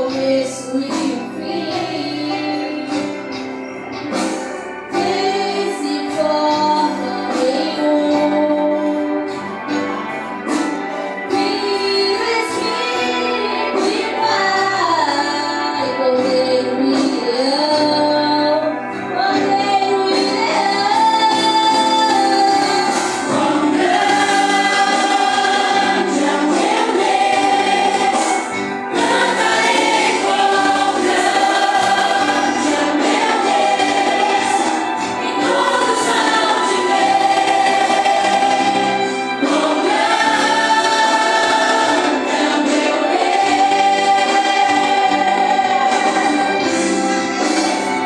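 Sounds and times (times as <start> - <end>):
youth choir singing: 0.0 - 3.1, 4.9 - 9.2, 20.5 - 48.0.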